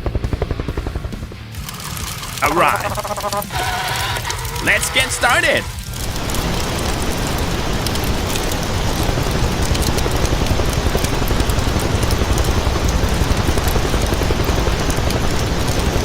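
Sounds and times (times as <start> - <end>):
construction vehicle engine running: 0.0 - 16.0.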